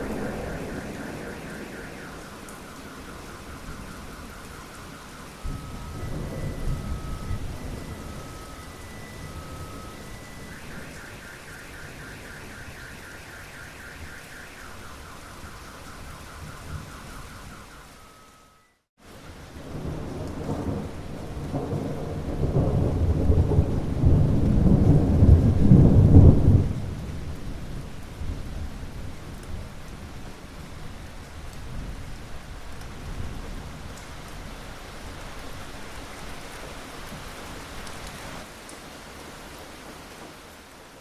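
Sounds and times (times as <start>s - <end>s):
deep rumble of thunder: 0.0s - 17.7s, 19.4s - 36.0s
faint pulsing two-pitch tone: 0.0s - 18.8s
steady rain: 0.0s - 41.0s.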